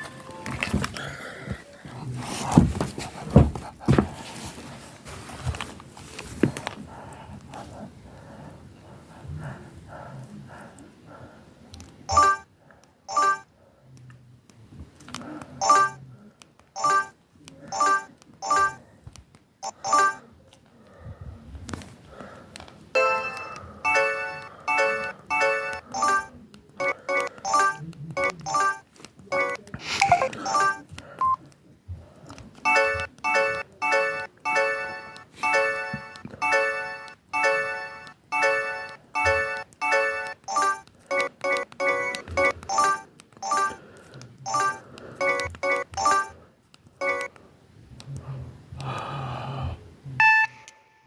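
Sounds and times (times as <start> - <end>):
polyphonic phone ringtone: 12.1 - 12.5, 13.1 - 13.5, 15.6 - 16.0, 19.6 - 20.2, 23.0 - 31.4, 32.7 - 43.8, 44.5 - 46.4
phone ringtone chiming notes: 23.0 - 26.3.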